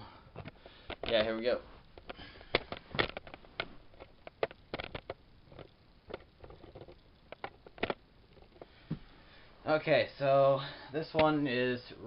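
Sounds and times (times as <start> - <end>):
light clicks and knocks of parts: 0.3 - 9.2, 11.0 - 11.6.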